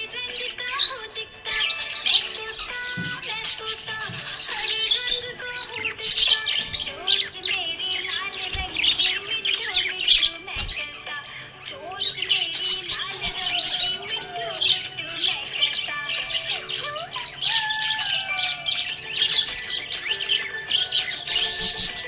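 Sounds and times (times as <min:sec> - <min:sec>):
background music: 0:00.0 - 0:22.0
budgerigar chirping and warbling: 0:00.0 - 0:22.0.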